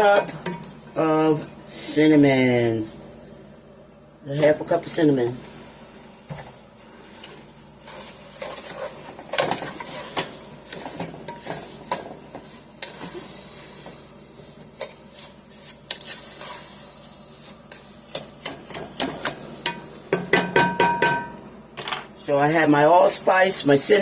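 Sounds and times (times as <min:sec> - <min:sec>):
light sizzle: 0:00.0 - 0:20.0
spoon clinking and scraping in pot: 0:07.9 - 0:12.1.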